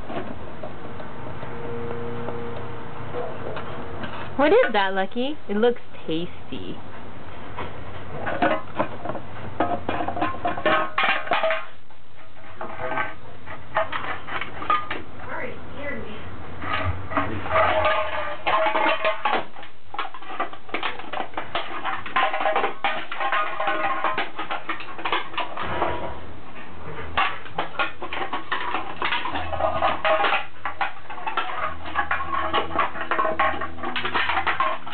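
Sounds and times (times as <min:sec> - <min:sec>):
metal can clanking and rattling: 0:08.1 - 0:15.1, 0:16.6 - 0:26.2, 0:26.9 - 0:34.9.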